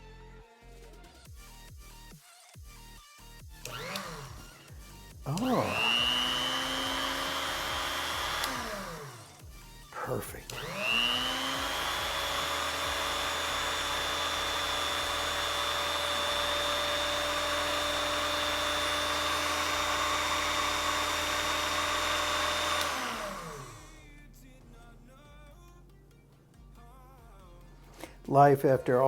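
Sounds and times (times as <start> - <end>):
machine spinning down: 3.6 - 9.6, 10.5 - 24.0
key cutting machine whining: 3.6 - 9.8, 10.4 - 24.0.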